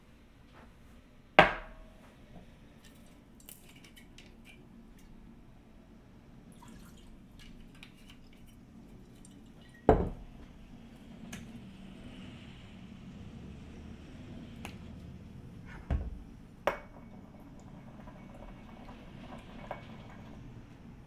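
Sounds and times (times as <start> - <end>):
glass barware knocking down: 1.4 - 1.9, 9.9 - 10.3.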